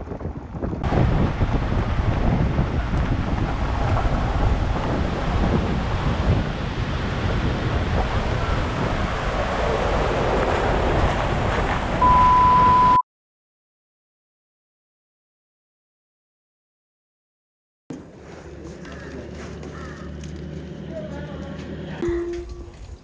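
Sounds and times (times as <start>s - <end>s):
wind buffeting microphone: 0.0s - 12.7s
high beep: 12.0s - 13.0s.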